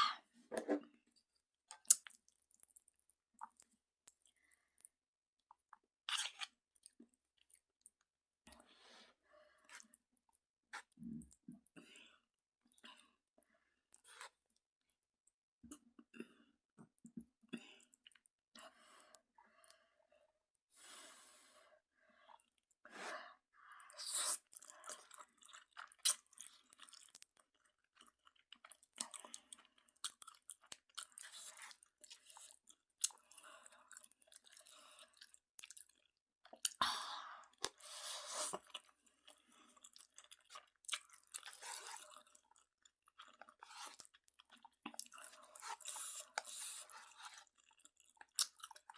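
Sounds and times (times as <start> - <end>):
person chewing noodles: 23.8 - 36.8, 37.5 - 48.9.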